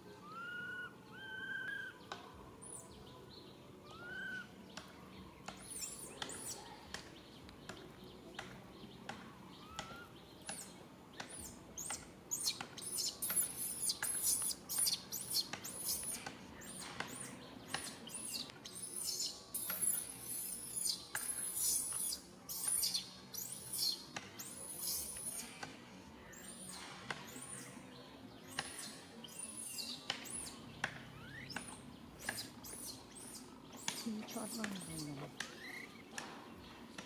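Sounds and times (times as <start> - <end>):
short arched whistled calls: 0.2 - 2.0, 9.6 - 17.3, 18.1 - 25.5
high-pitched chirping calls: 9.6 - 25.5.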